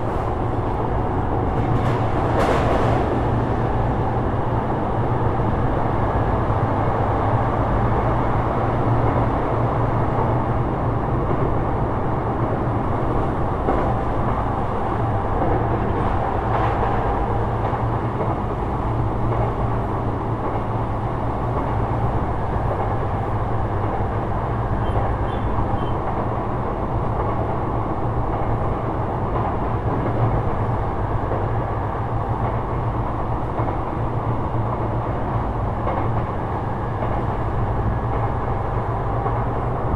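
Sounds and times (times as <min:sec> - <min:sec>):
low train hum: 0:00.0 - 0:39.9
train wheels rumbling on rail: 0:00.0 - 0:39.9.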